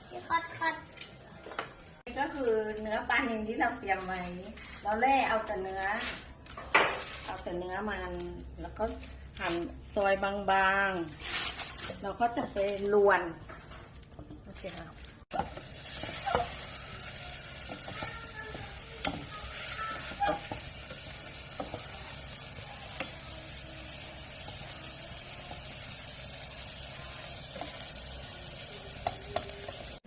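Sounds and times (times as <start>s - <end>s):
food sizzling in a pan: 0.0s - 1.3s, 2.0s - 13.4s, 14.5s - 30.0s
utensil clinking and scraping pan: 15.4s - 23.4s.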